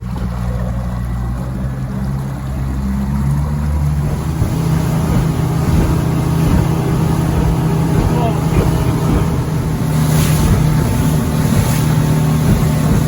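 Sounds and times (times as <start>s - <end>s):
motorboat engine running: 0.0s - 13.0s
rushing water: 0.0s - 13.0s
wind noise: 4.0s - 13.0s.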